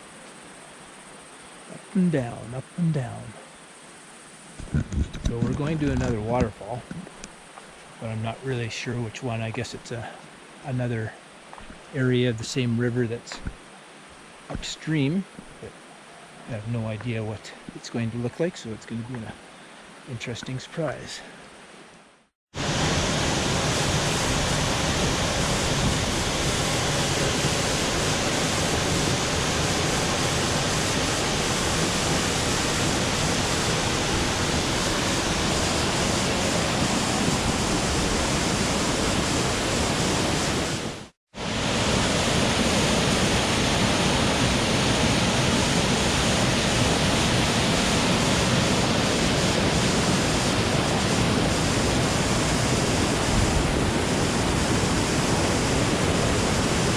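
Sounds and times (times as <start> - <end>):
waterfall rushing: 5.4 - 7.3, 22.6 - 56.9.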